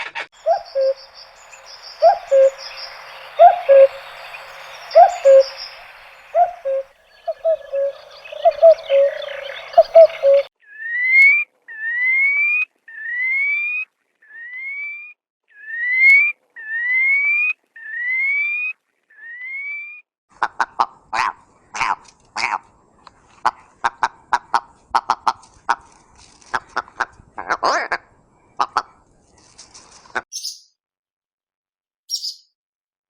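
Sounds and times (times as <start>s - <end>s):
whistled rising bird notes: 0.4s - 11.4s
short harsh bird calls: 30.3s - 30.7s, 32.1s - 32.4s.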